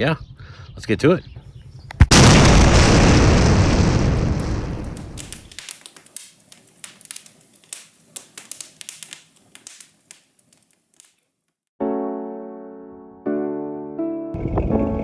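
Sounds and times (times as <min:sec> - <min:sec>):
sharp taps and clicks: 0:04.4 - 0:11.2.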